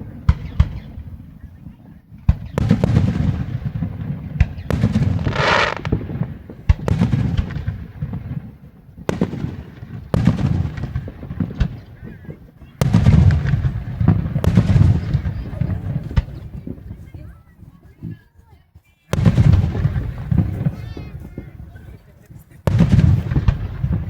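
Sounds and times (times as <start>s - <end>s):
fireworks bangs: 2.2s - 12.1s, 12.8s - 17.2s, 19.1s - 21.8s, 22.6s - 24.0s
hissing firework burst: 4.7s - 6.3s.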